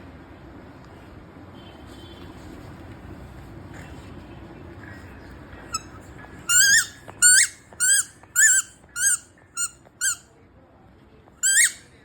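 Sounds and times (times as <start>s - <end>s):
squeaky toy ball squeaking: 5.6s - 10.3s, 11.4s - 12.0s.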